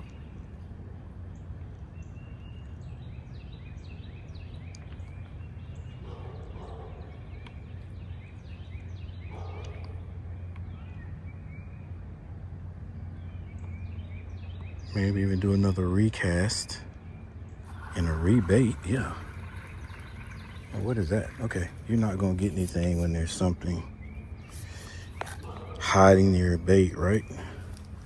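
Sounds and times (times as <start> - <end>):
small birds chirping: 0.0 - 12.0, 12.9 - 28.0
steady low hum: 14.2 - 28.0
lower-pitched bird calls: 17.4 - 28.0.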